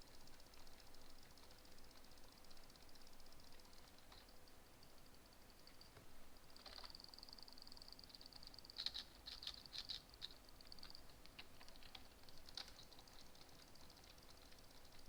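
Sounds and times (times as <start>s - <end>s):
faint high-pitched whine: 0.0s - 15.0s.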